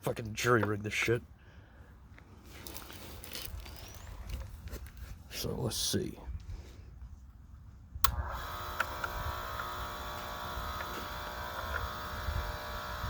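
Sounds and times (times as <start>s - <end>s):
cutter motor humming: 8.0s - 13.0s.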